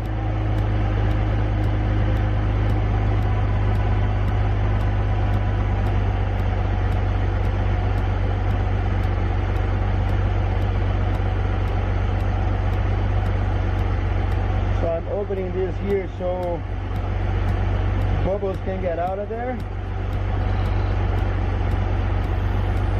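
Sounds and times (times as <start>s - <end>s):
car engine idling: 0.0s - 22.9s.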